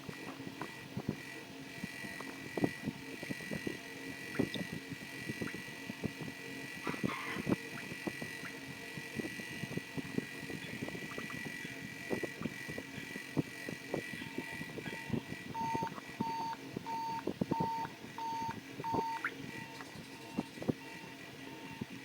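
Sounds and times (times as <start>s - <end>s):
short electronic beeps: 15.6s - 19.8s.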